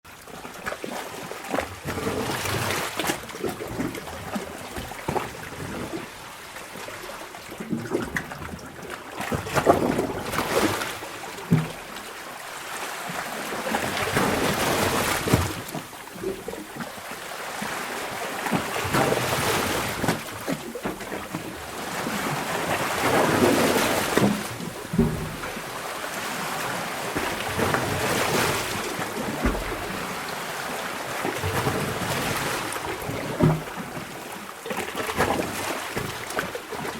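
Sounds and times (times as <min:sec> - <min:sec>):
sea waves surging in a cave: 0:00.1 - 0:36.9
water splashing and slapping: 0:00.1 - 0:36.9.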